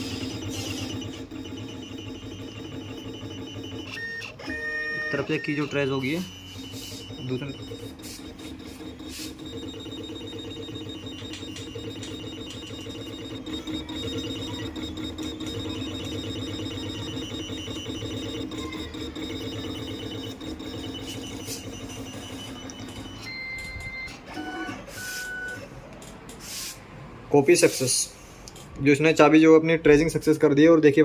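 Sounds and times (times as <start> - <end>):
high steady beep: 0.0 - 24.2
key cutting machine motor whine: 0.0 - 24.4.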